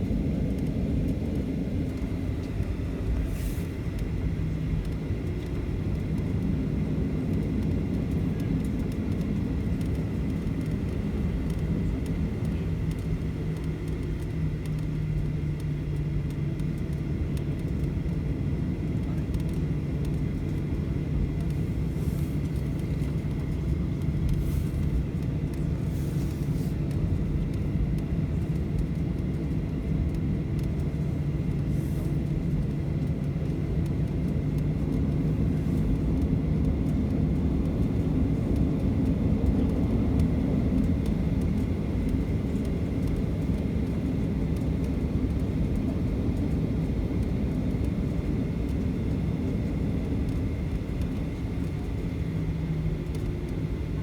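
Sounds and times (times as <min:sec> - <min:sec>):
jet engines idling: 0:18.9 - 0:54.0.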